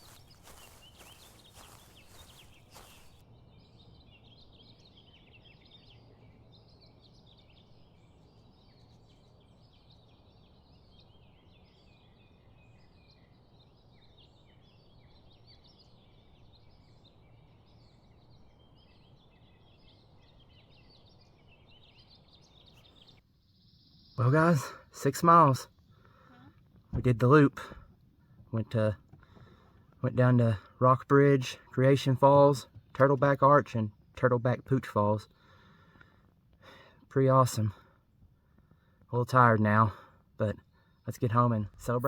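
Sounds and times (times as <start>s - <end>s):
footsteps: 0.0s - 3.2s
songbirds chirping and trilling: 0.0s - 42.0s.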